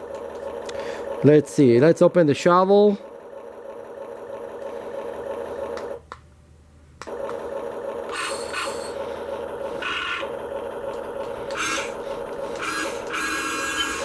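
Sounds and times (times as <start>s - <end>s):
small gear motors whirring: 7.1s - 14.0s.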